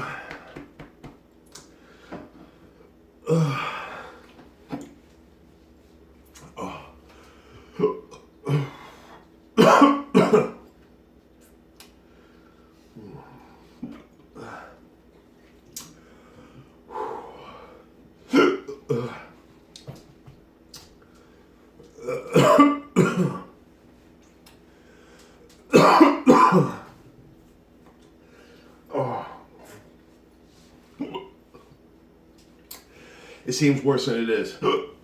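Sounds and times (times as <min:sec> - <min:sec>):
man clearing his throat: 0:03.2 - 0:03.9, 0:07.7 - 0:08.8, 0:09.6 - 0:10.6, 0:18.3 - 0:19.3, 0:22.0 - 0:23.5, 0:25.7 - 0:27.0, 0:34.5 - 0:35.0
man coughing: 0:09.6 - 0:10.6, 0:18.3 - 0:19.3, 0:22.0 - 0:23.5, 0:25.7 - 0:26.9, 0:34.5 - 0:35.0.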